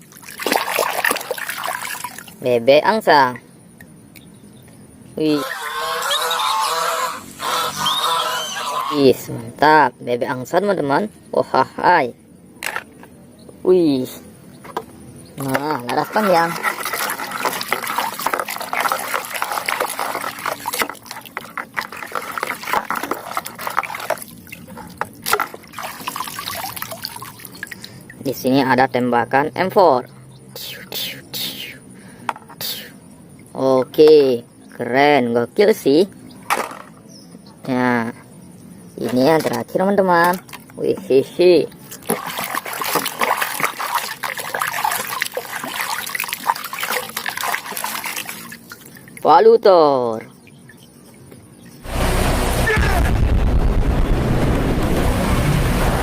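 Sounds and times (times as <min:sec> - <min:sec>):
water splashing and trickling: 0:00.0 - 0:04.0, 0:05.2 - 0:10.7, 0:13.9 - 0:30.8, 0:38.9 - 0:53.0.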